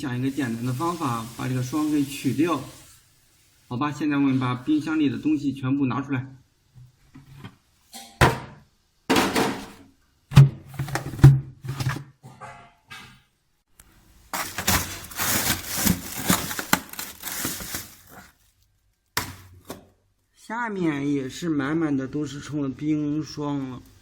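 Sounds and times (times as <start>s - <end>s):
items knocking in freezer: 8.2s - 12.1s, 14.3s - 18.3s, 19.2s - 19.9s
plastic bags crinkling: 14.3s - 19.4s.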